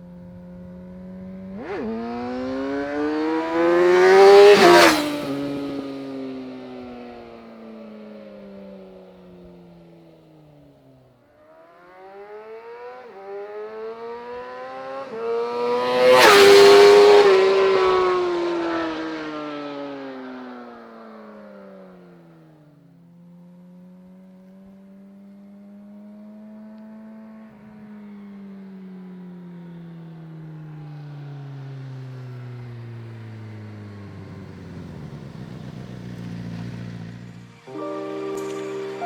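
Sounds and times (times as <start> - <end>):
motorcycle passing at speed: 0.0 - 39.0.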